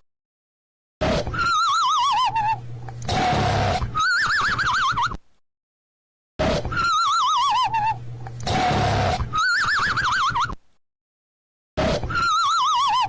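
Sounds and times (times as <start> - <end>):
rasping snore: 3.1 - 4.0, 8.4 - 9.4.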